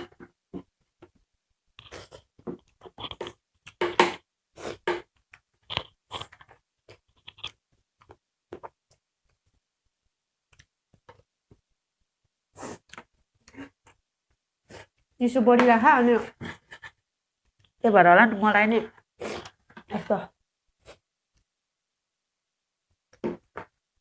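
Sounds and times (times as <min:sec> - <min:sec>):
chewing food: 0:05.2 - 0:09.0.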